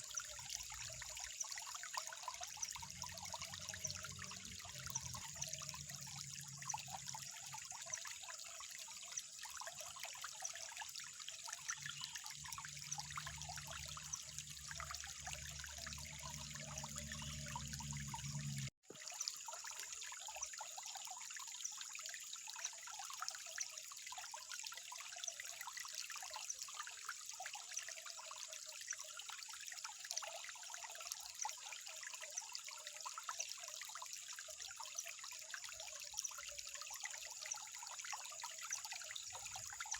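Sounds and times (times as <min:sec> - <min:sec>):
small splashes and drips: 0:00.0 - 0:39.9
water trickling: 0:00.0 - 0:39.9
low hum: 0:15.3 - 0:18.7.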